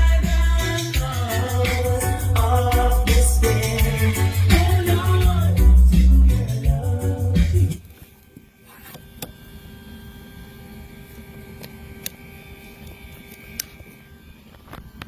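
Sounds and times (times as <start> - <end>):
music: 0.0 - 7.9.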